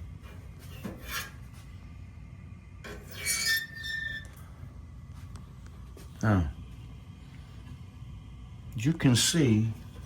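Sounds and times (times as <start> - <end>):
metal probe scraping flue: 0.7 - 1.4, 2.8 - 4.4.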